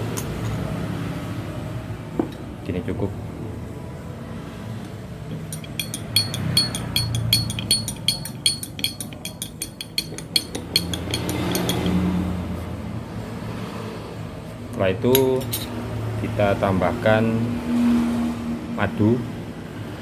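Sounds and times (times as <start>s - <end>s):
spoon clinking against vessel: 5.3s - 12.1s.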